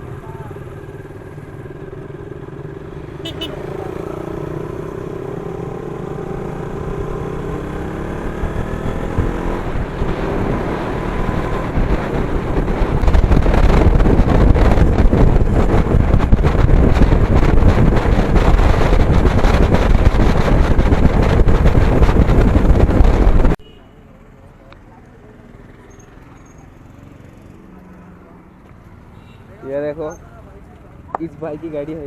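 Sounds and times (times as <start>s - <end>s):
motorcycle engine accelerating: 0.2s - 23.6s
wind buffeting microphone: 6.3s - 23.6s.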